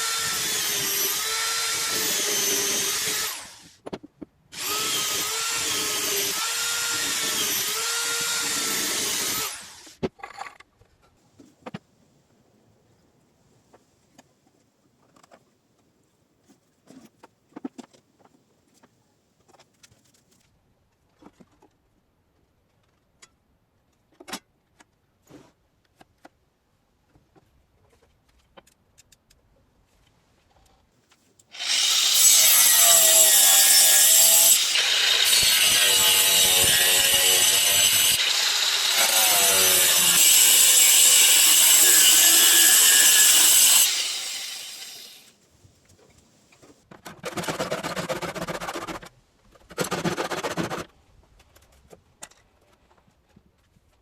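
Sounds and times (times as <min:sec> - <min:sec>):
electric saw cutting wood: 0:00.0 - 0:03.7, 0:04.6 - 0:09.9, 0:31.5 - 0:45.3.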